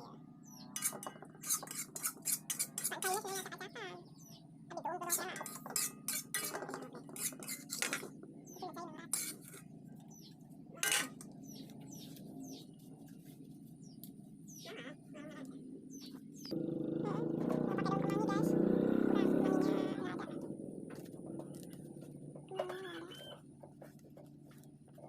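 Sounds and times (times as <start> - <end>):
small birds chirping: 0.0 - 25.0
utensils clinking against dishes: 0.6 - 3.6, 5.0 - 9.7, 10.8 - 12.6.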